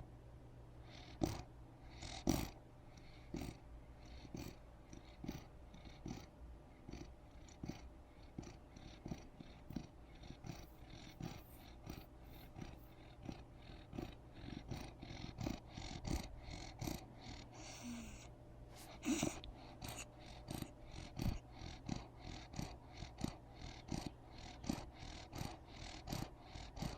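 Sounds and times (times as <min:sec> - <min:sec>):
baby snoring: 0:14.0 - 0:21.8.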